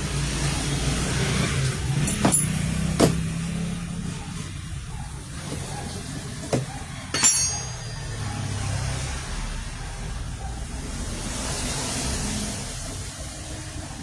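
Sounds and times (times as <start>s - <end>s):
metal tools knocking and clinking: 2.0s - 3.2s, 6.4s - 9.0s.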